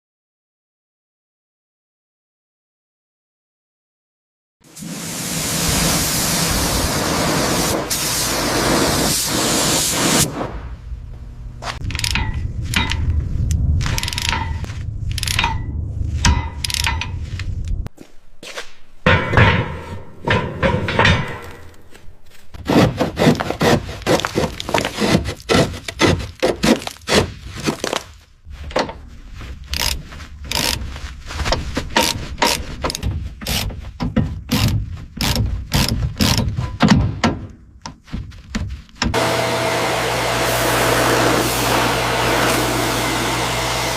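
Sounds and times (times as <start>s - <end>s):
hand tool scraping metal: 22.6s - 27.9s, 31.9s - 33.8s.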